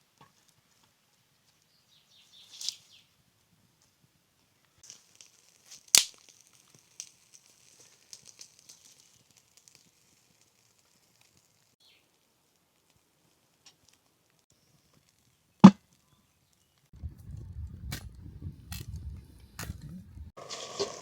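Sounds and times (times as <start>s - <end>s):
rustling and crackling: 0.0s - 21.0s
sharp crack: 4.8s - 7.2s.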